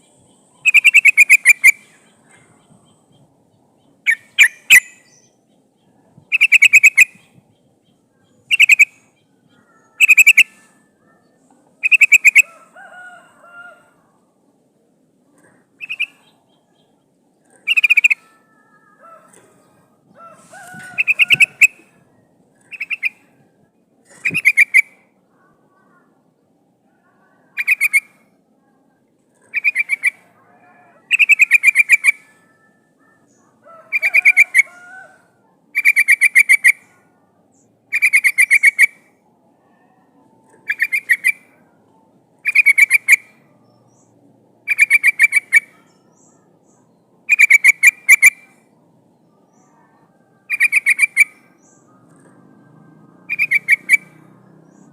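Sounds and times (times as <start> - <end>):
bulbul chattering calls: 0.0 - 13.1, 15.4 - 26.1, 27.0 - 28.2, 29.4 - 32.4, 33.0 - 41.6, 42.4 - 48.7, 49.4 - 52.3, 53.2 - 54.9.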